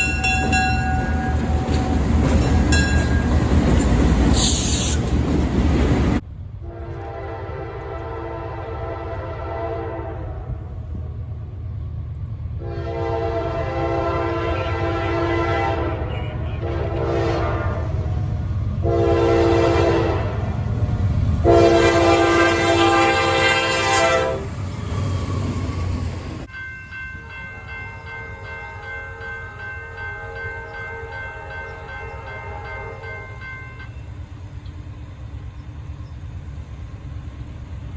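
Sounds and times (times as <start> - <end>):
low train rumble: 0.0 - 37.9
locomotive air horn blasts: 6.6 - 10.7, 12.6 - 18.1, 18.8 - 20.5, 21.4 - 24.5.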